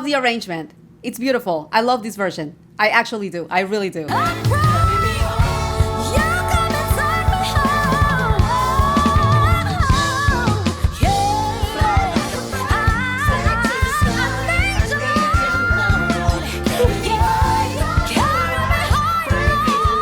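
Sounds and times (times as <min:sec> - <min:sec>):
instrumental accompaniment: 0:04.1 - 0:20.0
woman singing soul ballad: 0:04.1 - 0:20.0.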